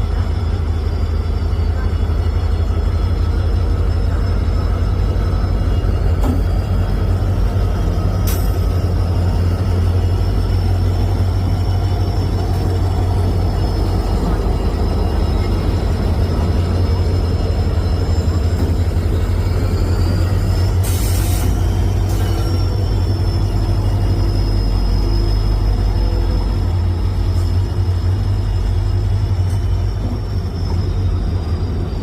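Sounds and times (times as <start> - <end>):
train rumbling: 0.0 - 32.0.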